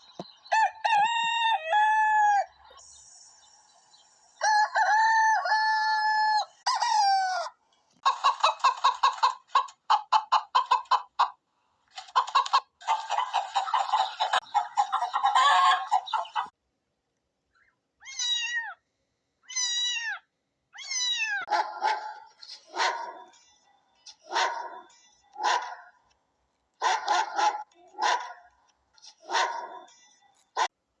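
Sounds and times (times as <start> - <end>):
chickens clucking and cackling: 0.0 - 16.6
rooster crowing: 0.5 - 2.5, 4.4 - 7.6.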